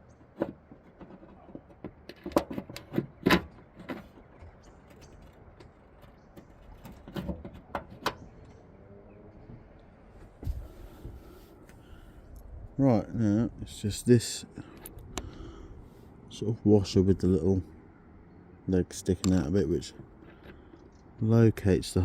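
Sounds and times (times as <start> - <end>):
metal parts clicking and knocking: 0.2 - 8.2.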